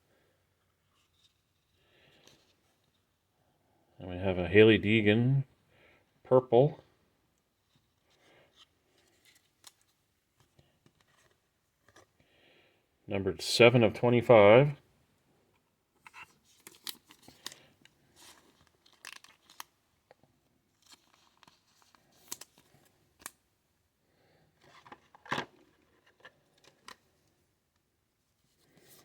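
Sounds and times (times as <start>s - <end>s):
trading cards rustling and sliding: 16.0s - 19.7s, 20.8s - 23.3s, 24.6s - 27.0s.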